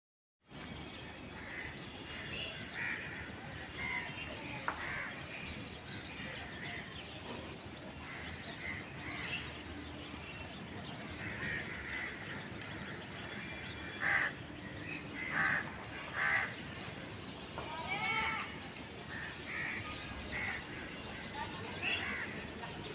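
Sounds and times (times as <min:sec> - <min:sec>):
crows cawing: 0:13.8 - 0:14.4, 0:15.2 - 0:16.6.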